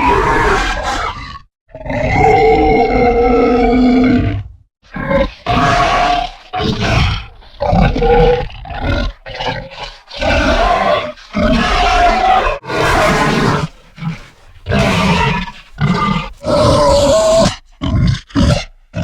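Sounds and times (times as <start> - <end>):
creature grunting roars: 0.0 - 4.2, 10.3 - 18.7.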